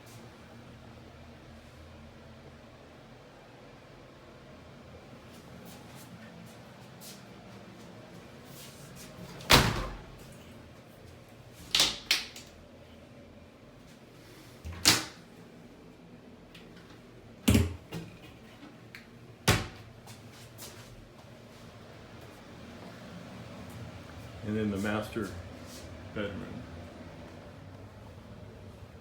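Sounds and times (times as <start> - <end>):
doors opening and shutting: 9.2 - 10.2.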